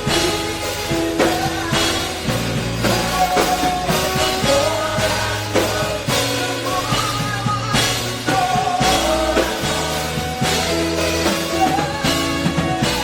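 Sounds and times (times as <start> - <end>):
drum kit beat: 0.0 - 13.0
gliding lead melody: 0.0 - 13.0
sustained bass: 0.0 - 13.0.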